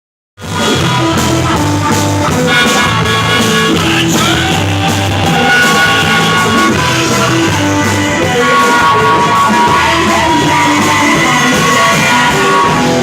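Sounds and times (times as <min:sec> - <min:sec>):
rock music with guitar and drums: 0:00.4 - 0:13.0.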